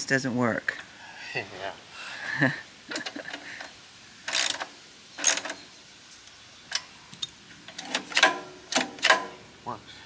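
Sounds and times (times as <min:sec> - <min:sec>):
engine pull-starter whirring: 0:02.9 - 0:05.6.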